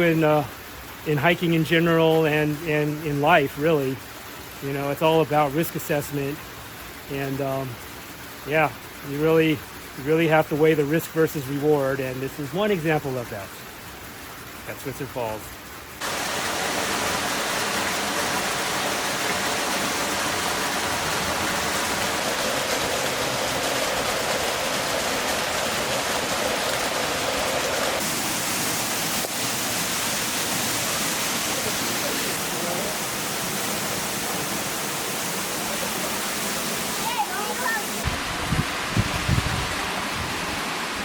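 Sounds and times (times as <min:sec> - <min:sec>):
waterfall rushing: 0:14.6 - 0:41.0.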